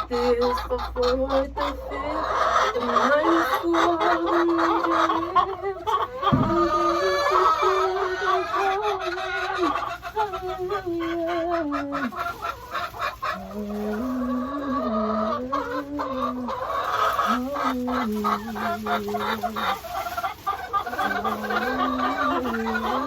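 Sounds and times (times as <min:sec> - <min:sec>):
woman singing: 0:00.0 - 0:08.8, 0:17.2 - 0:19.8, 0:21.0 - 0:23.0
hens clucking: 0:00.0 - 0:23.0.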